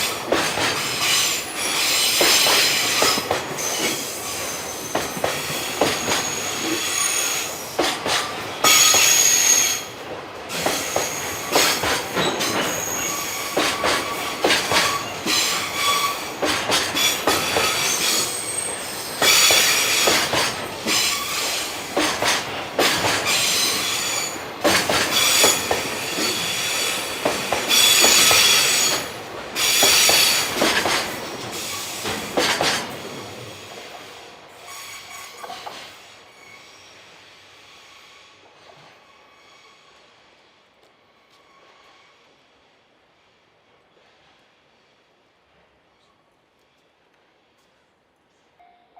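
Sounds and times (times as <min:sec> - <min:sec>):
train wheels clacking on rails: 0:00.0 - 0:36.1
train wheels squealing: 0:00.0 - 0:40.2, 0:41.2 - 0:42.3.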